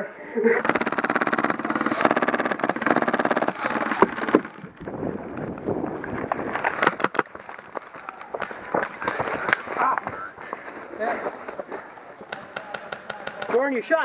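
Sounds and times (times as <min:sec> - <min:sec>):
airsoft gun firing full auto: 0:00.6 - 0:04.6, 0:12.3 - 0:13.6
sharp clicks: 0:00.6 - 0:04.9.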